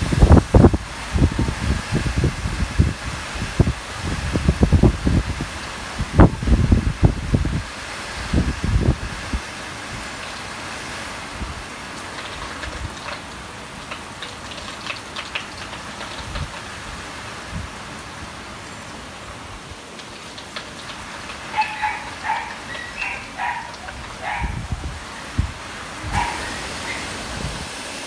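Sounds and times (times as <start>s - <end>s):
wind thumps on microphone: 0.0s - 9.4s, 23.4s - 27.8s
heavy rain hissing: 0.0s - 28.0s
dog barking: 21.5s - 25.0s, 26.1s - 27.2s.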